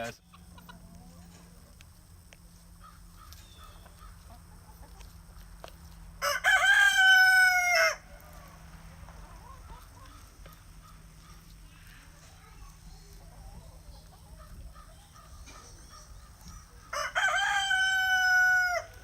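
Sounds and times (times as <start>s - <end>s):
faint chicken clucking: 0.0s - 19.0s
rooster crowing: 6.2s - 8.6s, 16.8s - 19.0s.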